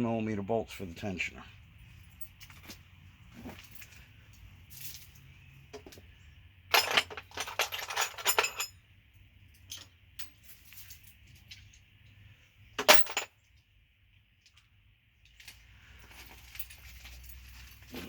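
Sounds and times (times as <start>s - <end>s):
metal hand tools clinking: 6.7s - 8.7s.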